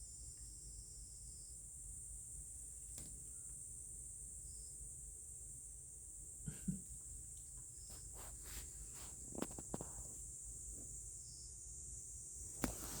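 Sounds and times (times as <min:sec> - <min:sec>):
soft knocks and scuffs: 0:07.8 - 0:11.0, 0:12.6 - 0:13.0.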